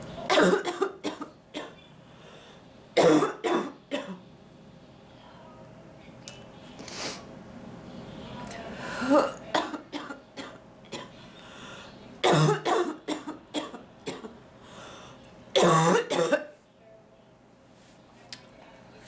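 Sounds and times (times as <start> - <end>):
woman coughing: 0.3 - 1.8, 3.0 - 4.2, 9.0 - 11.1, 12.2 - 14.4, 15.6 - 16.6.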